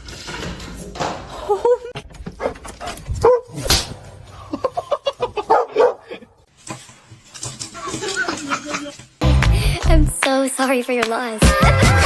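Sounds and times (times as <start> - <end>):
dog barking and yipping: 3.2 - 3.6, 5.4 - 6.1.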